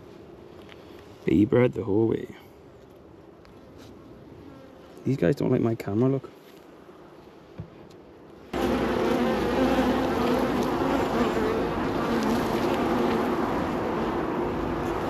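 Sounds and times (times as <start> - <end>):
bees buzzing loudly: 8.5 - 15.0.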